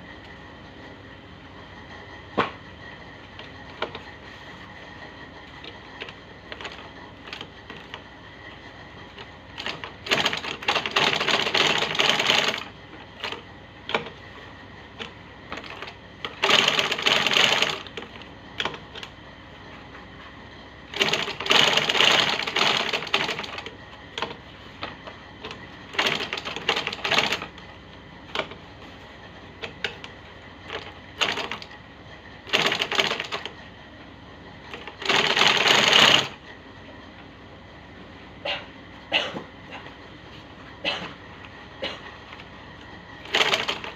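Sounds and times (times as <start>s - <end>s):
sewing machine rapid clicking: 5.4s - 8.0s, 9.1s - 14.3s, 15.0s - 19.1s, 20.9s - 24.4s, 25.4s - 27.7s, 29.6s - 31.8s, 32.4s - 33.6s, 34.7s - 36.4s, 43.2s - 43.9s.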